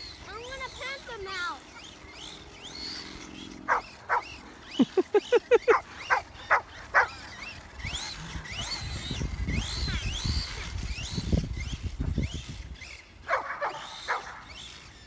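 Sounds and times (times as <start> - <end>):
electric motor whining: 0.0 - 15.0
toy truck rumbling across grass: 0.0 - 15.0
dog barking: 3.7 - 7.2, 13.3 - 14.4.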